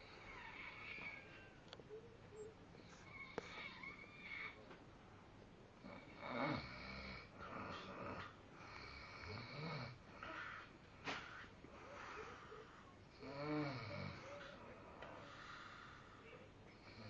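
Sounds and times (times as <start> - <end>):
man snoring: 5.8 - 10.0, 13.1 - 14.2.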